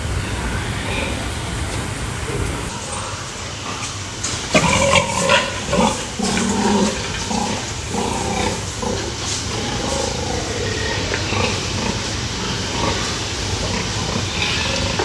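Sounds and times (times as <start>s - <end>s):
pigs grunting and squealing: 0.0s - 15.0s.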